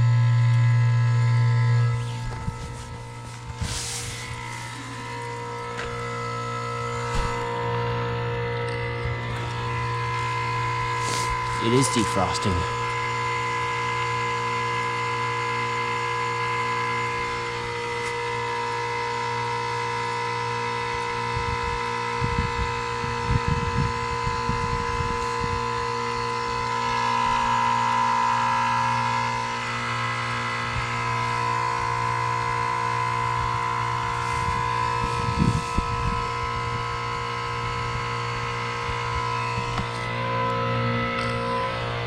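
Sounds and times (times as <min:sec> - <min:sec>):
wind rumble on microphone: 0:00.0 - 0:04.7, 0:20.8 - 0:27.6, 0:33.2 - 0:40.2
heat pump compressor hum: 0:00.0 - 0:42.0.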